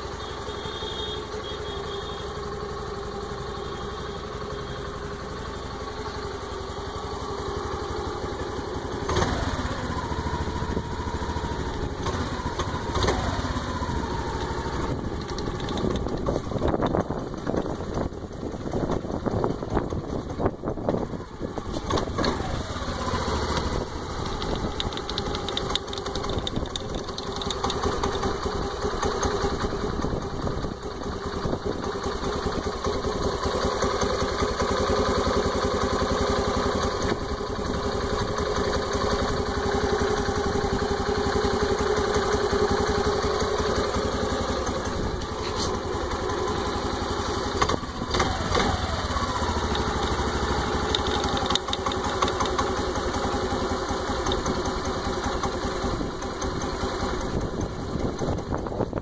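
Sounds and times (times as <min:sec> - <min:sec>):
scooter engine idling: 0:00.0 - 0:59.0
fine rapid clicking: 0:15.2 - 0:16.2, 0:24.2 - 0:28.2, 0:49.6 - 0:52.8.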